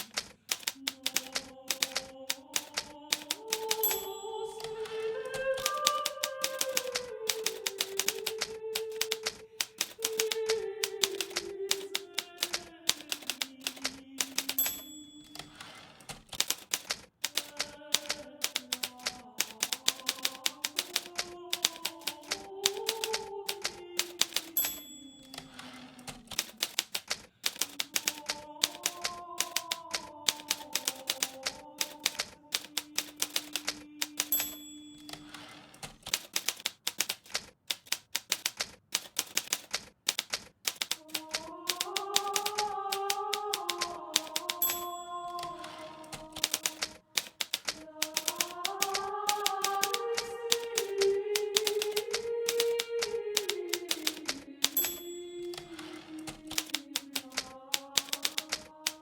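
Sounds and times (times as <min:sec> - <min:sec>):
typewriter bell ding: 0:00.0 - 0:22.1, 0:23.0 - 0:29.7, 0:30.3 - 0:37.2, 0:44.2 - 0:50.8, 0:53.8 - 0:57.0
typewriter keys clacking: 0:00.0 - 0:59.0.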